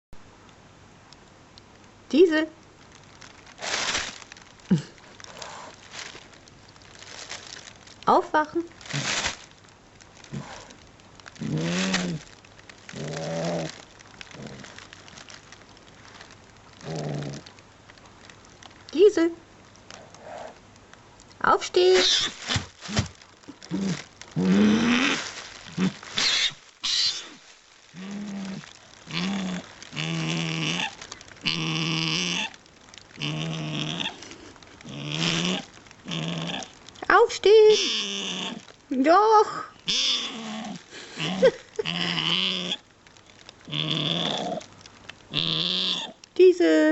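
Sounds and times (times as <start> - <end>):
dog groaning and grumbling: 11.4 - 12.3, 12.9 - 14.8, 16.8 - 17.5, 22.0 - 26.0, 28.0 - 32.6, 33.2 - 34.2, 34.8 - 36.7, 40.0 - 42.8, 43.7 - 44.7.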